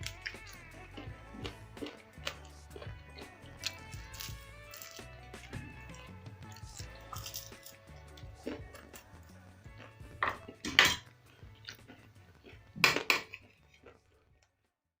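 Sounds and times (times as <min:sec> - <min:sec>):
quiet background music: 0:00.0 - 0:14.9
dishes and cutlery clinking: 0:05.9 - 0:07.9, 0:10.2 - 0:11.2, 0:12.8 - 0:13.9.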